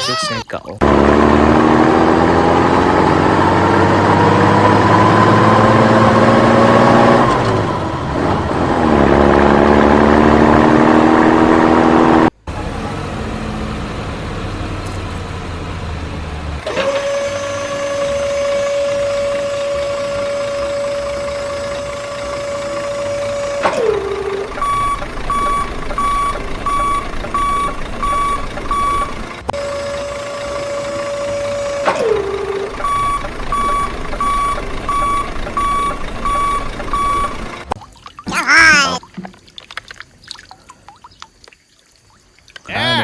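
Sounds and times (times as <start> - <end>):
toy engine-like tone: 0.0 - 0.4, 38.3 - 39.0.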